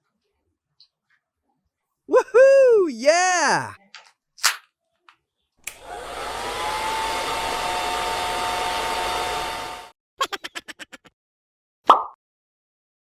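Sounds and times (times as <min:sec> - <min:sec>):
hair dryer blowing: 0:05.7 - 0:09.9.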